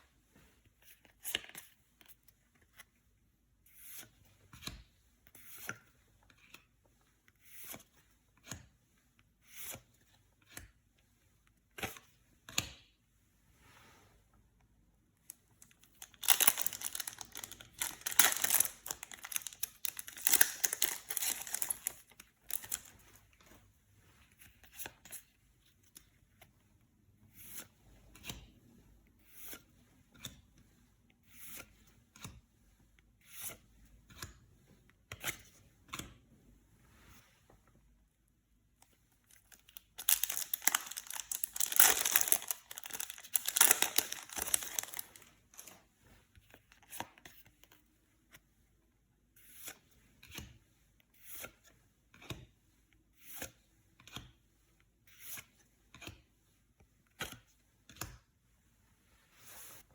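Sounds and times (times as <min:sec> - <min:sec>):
soft rustles of card handling: 0:00.0 - 0:37.9, 0:38.7 - 0:48.7, 0:49.3 - 0:59.9
foil pack tearing and crinkling: 0:16.2 - 0:22.7, 0:40.0 - 0:45.2.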